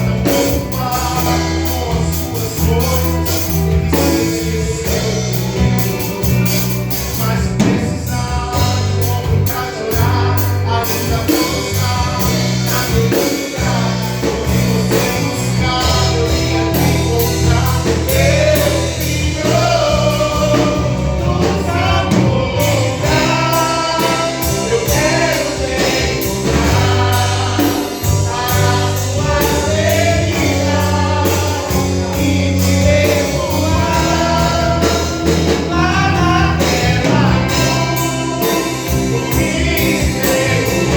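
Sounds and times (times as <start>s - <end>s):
gospel band music with singing: 0.0s - 40.9s.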